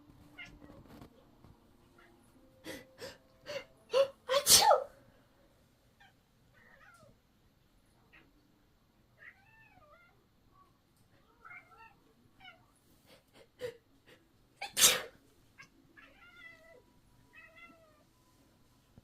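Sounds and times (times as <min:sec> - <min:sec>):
person sneezing: 0:03.9 - 0:04.9, 0:14.6 - 0:15.2
cat meowing faintly: 0:06.0 - 0:07.2, 0:15.6 - 0:18.1.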